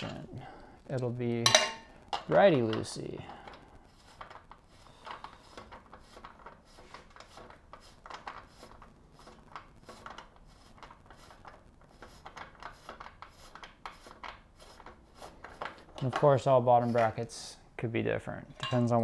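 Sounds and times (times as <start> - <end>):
metal scraping: 14.6 - 17.5.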